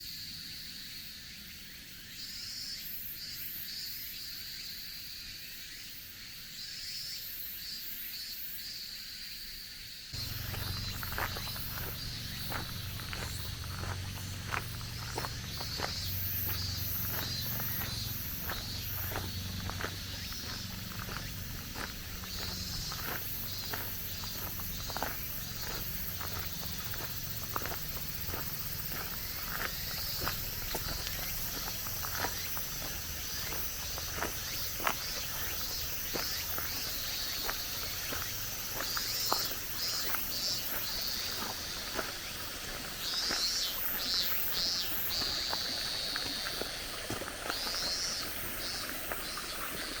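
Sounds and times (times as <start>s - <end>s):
cicadas buzzing in chorus: 0.0s - 50.0s
footsteps: 10.2s - 43.6s, 45.2s - 49.9s.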